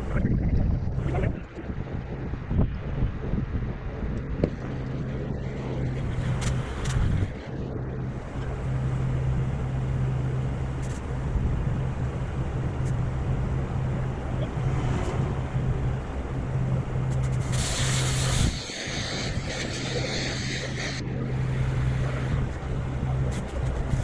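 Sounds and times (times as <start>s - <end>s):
engine humming: 0.0s - 24.0s
hissing noise: 17.1s - 22.6s.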